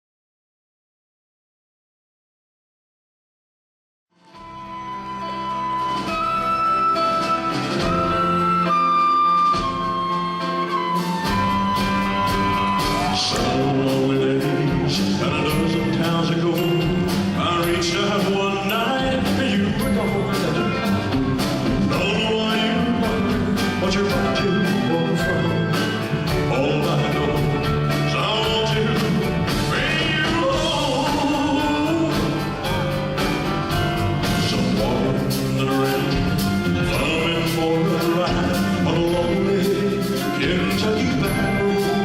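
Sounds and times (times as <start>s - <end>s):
live band playing ballad: 4.2s - 42.0s
drums steady beat: 9.5s - 42.0s
person singing: 10.6s - 42.0s.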